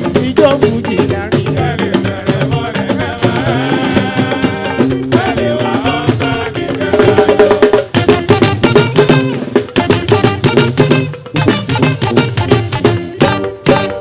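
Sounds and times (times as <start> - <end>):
person singing: 0.0 - 9.0, 11.4 - 14.0
fast percussion groove: 0.0 - 14.0
pitched instrument lines: 0.0 - 14.0.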